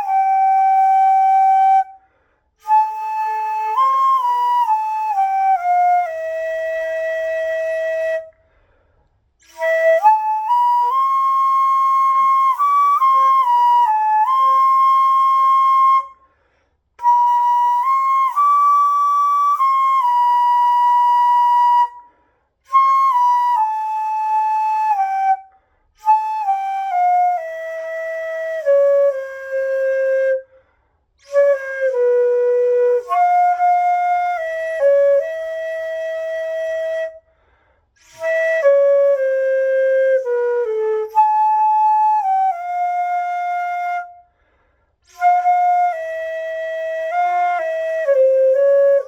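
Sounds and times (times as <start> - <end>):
bamboo flute melody: 0.0 - 49.0.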